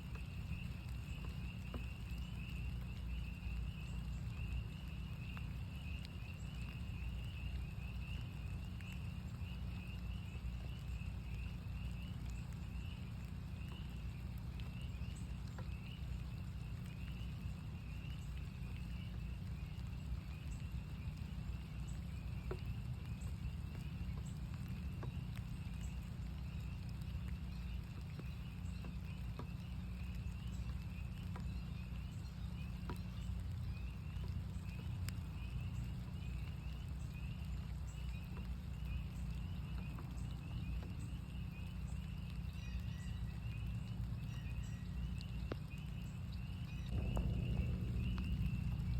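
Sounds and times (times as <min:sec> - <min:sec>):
raindrops ticking: 0:00.0 - 0:48.9
spring peepers chorus: 0:00.0 - 0:48.9
low rumble: 0:42.5 - 0:48.9.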